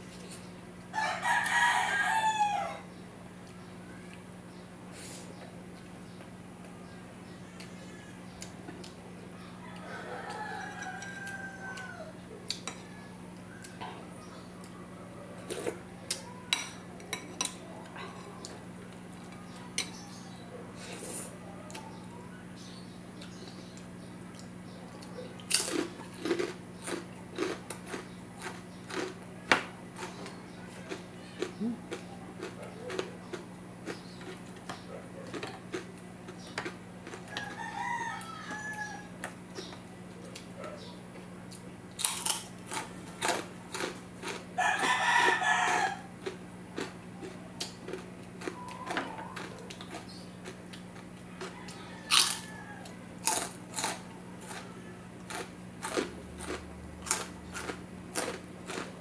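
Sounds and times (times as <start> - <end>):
rooster crowing: 0.9 - 2.9, 6.8 - 8.6, 9.2 - 16.5, 37.0 - 39.7, 43.2 - 46.4, 48.4 - 49.9, 51.2 - 56.5
chewing and eating clicks: 23.2 - 37.6, 39.2 - 59.0.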